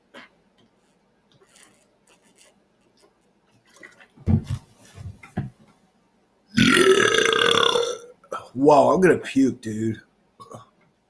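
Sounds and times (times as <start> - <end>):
man belching: 6.5 - 8.4.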